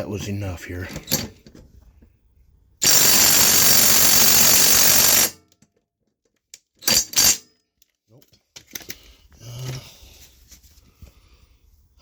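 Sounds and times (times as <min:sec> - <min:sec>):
impact wrench hammering: 0:02.8 - 0:05.4, 0:06.9 - 0:07.4.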